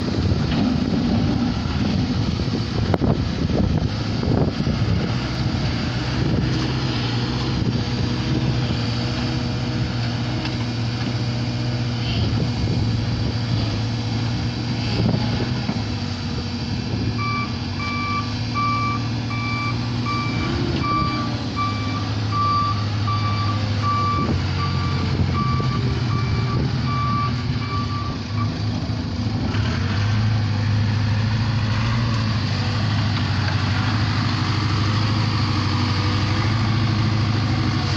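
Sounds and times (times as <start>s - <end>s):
diesel engine running: 0.0s - 37.9s
reversing alarm beeping: 17.2s - 28.6s.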